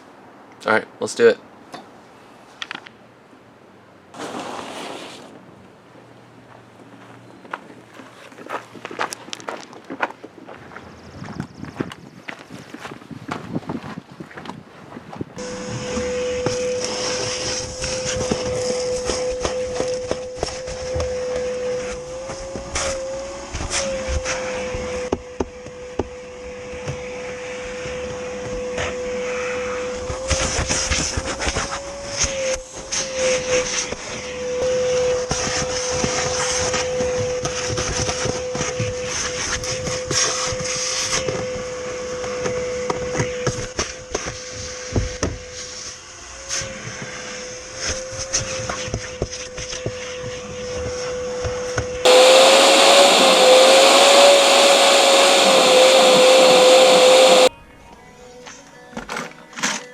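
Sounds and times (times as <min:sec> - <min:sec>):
vacuum cleaner whining: 0:04.2 - 0:05.4, 0:15.4 - 0:57.5.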